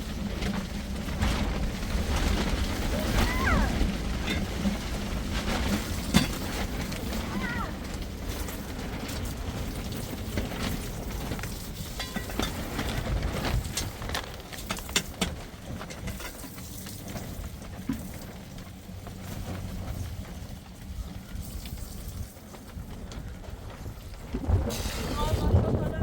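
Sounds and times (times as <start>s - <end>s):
sharp taps of raindrops: 0.0s - 24.7s
heavy rain hissing: 1.1s - 12.0s, 24.4s - 26.0s
low rumble: 18.8s - 26.0s.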